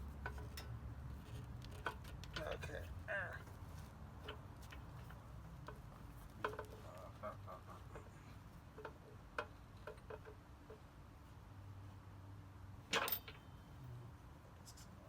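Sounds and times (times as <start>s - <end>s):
metal parts clicking and clinking: 12.9s - 13.5s.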